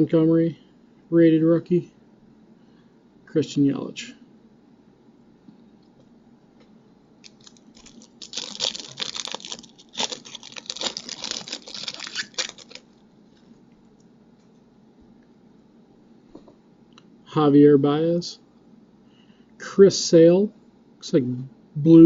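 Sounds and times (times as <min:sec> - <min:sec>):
card pack wrapper crinkling: 0:07.2 - 0:13.0.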